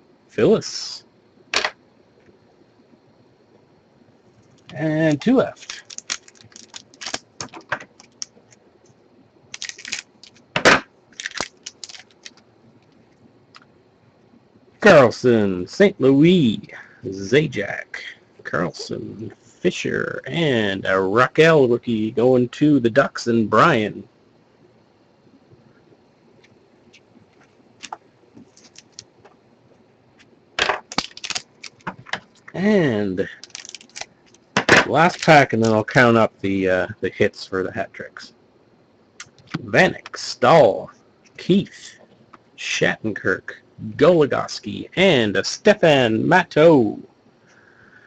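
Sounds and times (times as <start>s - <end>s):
trading cards and packaging handled: 4.4s - 8.5s, 9.5s - 13.0s, 27.3s - 29.3s, 30.6s - 32.6s, 33.3s - 35.8s
crackling clicks: 4.4s - 13.7s, 25.3s - 29.4s, 30.2s - 32.6s, 33.3s - 35.8s, 39.2s - 40.2s
wrapper crinkling: 5.6s - 8.4s, 9.5s - 10.5s, 11.1s - 12.4s, 27.8s - 29.1s, 30.7s - 32.6s, 33.3s - 35.5s
cards clicking: 27.8s - 29.1s.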